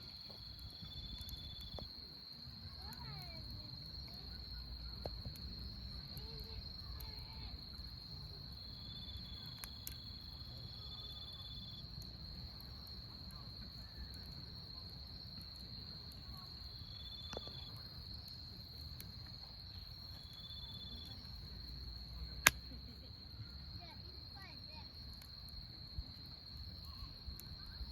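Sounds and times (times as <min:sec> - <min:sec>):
campfire crackling: 0:00.0 - 0:27.9
crickets chirring: 0:00.0 - 0:27.9.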